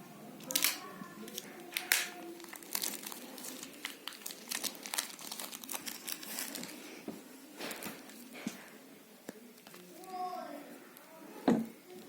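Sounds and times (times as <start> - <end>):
packaging crinkling: 0.4 - 6.9.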